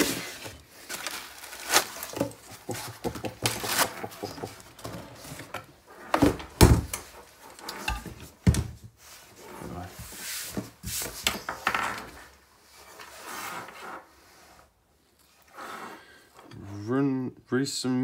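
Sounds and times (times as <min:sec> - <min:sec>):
packaging rustling: 0:00.0 - 0:05.3.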